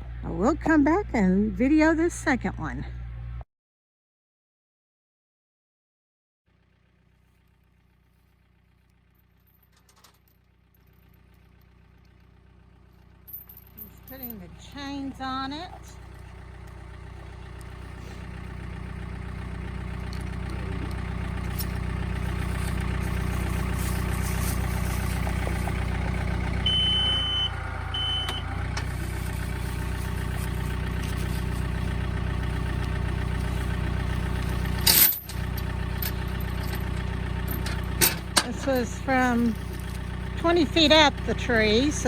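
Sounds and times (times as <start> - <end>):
tractor engine running: 6.5 - 42.0
short high beeps: 26.7 - 28.4.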